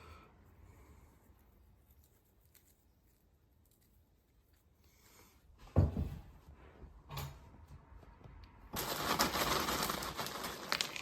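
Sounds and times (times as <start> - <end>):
wrapping crinkling: 8.8 - 11.0.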